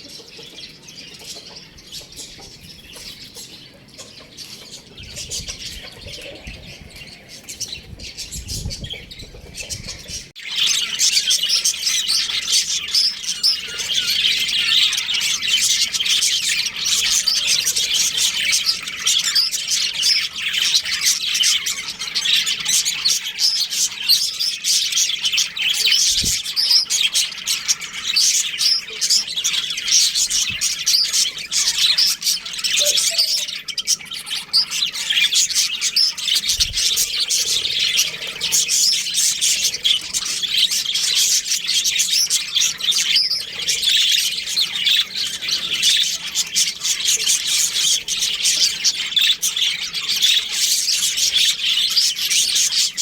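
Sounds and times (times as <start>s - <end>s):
many small birds chirping: 0.0s - 53.0s.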